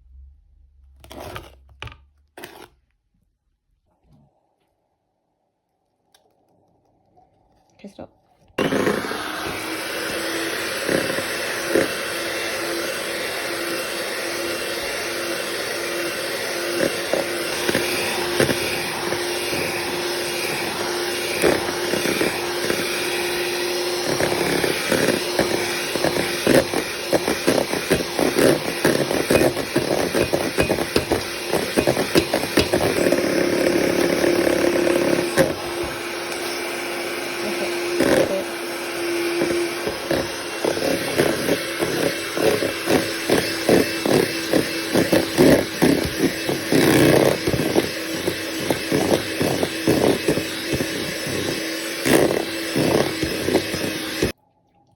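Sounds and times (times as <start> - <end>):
electric hand mixer running: 8.5 - 54.4
beaters clattering against bowl: 24.9 - 35.3.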